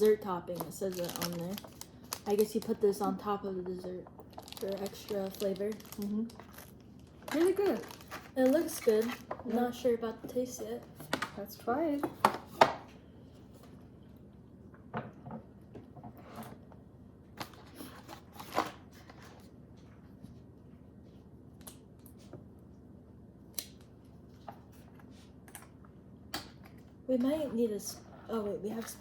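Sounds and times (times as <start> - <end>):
plastic packaging crinkling: 0.0 - 3.3, 4.2 - 9.4.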